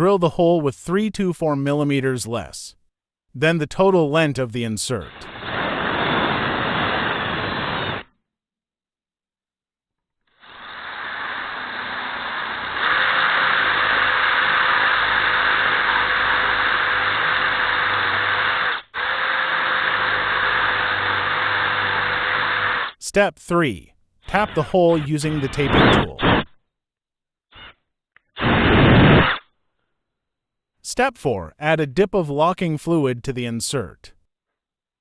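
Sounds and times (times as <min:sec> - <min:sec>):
drill whirring into metal: 0:05.2 - 0:08.1, 0:10.3 - 0:23.0, 0:27.5 - 0:29.5.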